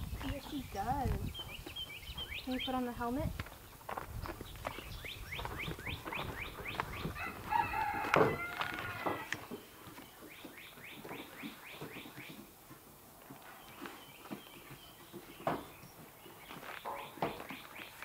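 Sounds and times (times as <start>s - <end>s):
bird chirping: 0.0s - 7.3s, 9.3s - 12.5s, 13.4s - 18.0s
rooster crowing: 7.1s - 9.4s.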